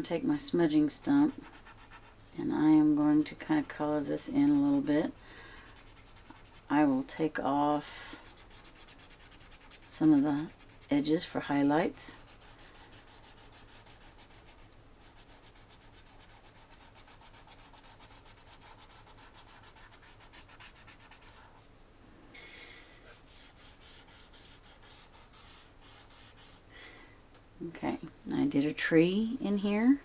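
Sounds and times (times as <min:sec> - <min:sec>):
pencil rubbing on paper: 0:01.1 - 0:11.1, 0:12.1 - 0:21.7, 0:22.8 - 0:26.6.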